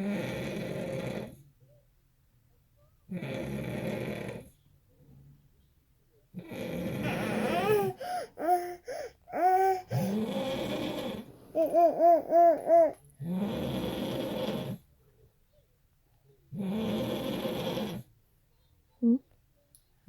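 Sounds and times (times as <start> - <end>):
man snoring: 6.4 - 8.6, 9.4 - 11.2, 13.2 - 14.8, 16.6 - 18.0
baby fussing cries: 7.0 - 10.4, 11.5 - 13.0.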